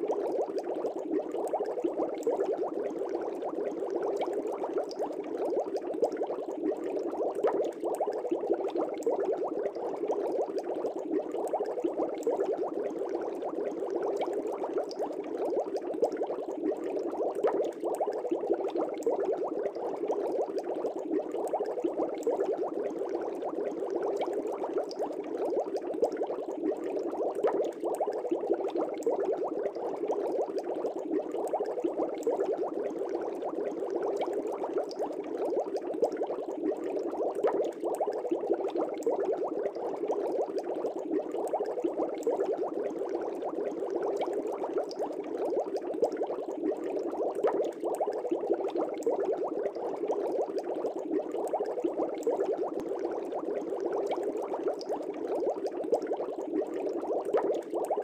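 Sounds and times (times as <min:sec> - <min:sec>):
aquarium air bubbling: 0:00.0 - 0:58.0.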